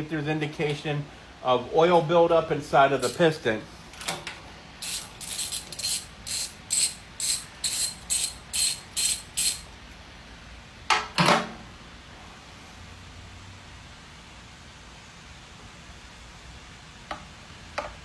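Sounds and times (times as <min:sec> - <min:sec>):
ratchet wrench clicking: 0:03.0 - 0:03.2, 0:04.8 - 0:09.7.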